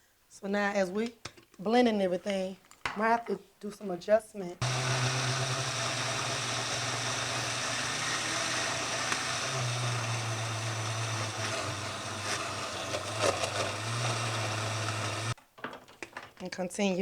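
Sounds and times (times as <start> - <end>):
electric blender running: 4.6 - 15.4
blender rattles: 4.6 - 16.4.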